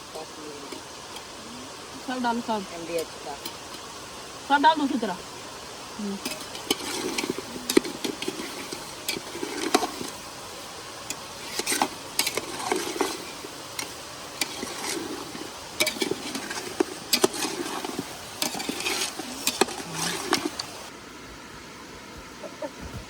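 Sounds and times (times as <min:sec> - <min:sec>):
spoon scraping cooking pot: 0:03.0 - 0:03.9, 0:06.2 - 0:10.2, 0:11.0 - 0:20.9.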